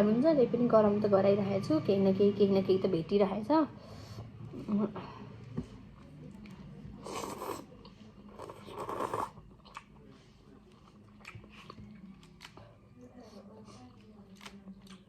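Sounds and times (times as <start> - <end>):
chewing with mouth clicks: 6.3 - 12.9, 13.7 - 15.0
person eating soup: 7.0 - 12.6.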